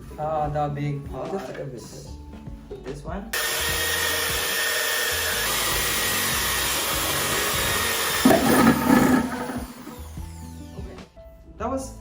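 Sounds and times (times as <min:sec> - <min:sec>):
power drill grinding: 0:03.4 - 0:10.4.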